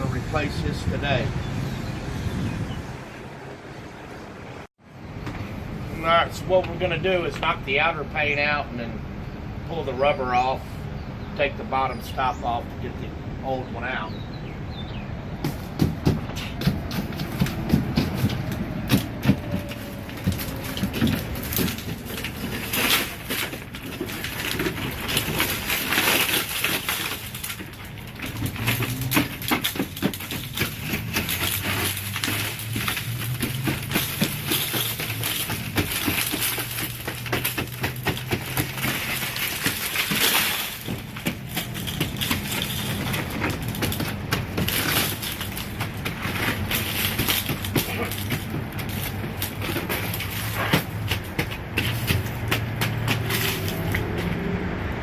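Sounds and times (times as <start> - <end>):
breaking glass crunching and clinking: 17.2 - 54.0.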